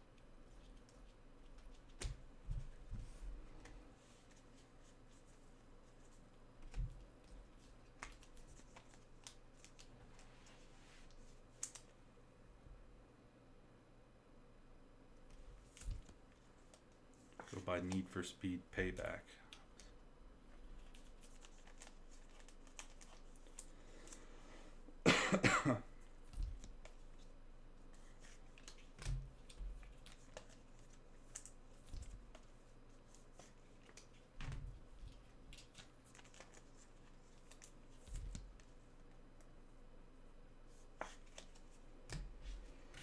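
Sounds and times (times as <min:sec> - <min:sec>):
cards and packs being handled: 0:00.7 - 0:12.0, 0:15.4 - 0:20.0, 0:20.6 - 0:24.2, 0:26.2 - 0:38.9, 0:41.0 - 0:43.0
person coughing: 0:25.0 - 0:26.0.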